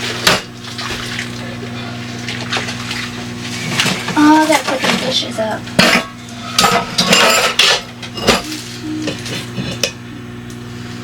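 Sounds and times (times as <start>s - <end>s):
dishes and cutlery clattering: 5.8s - 10.0s.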